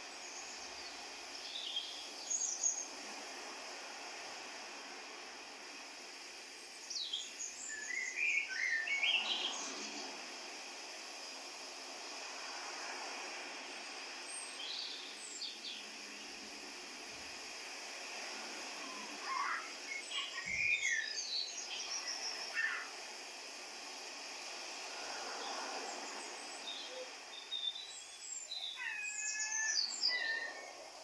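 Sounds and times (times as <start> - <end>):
birds chirping: 0.0 - 2.9, 6.7 - 9.7, 18.8 - 23.0, 25.4 - 31.0
outdoor ambience hiss: 0.0 - 31.0.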